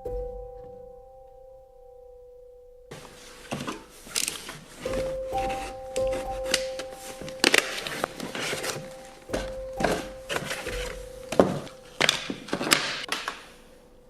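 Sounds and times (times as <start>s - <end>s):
scraping and rubbing: 2.9s - 13.5s
clicks and knocks of parts: 6.0s - 13.5s.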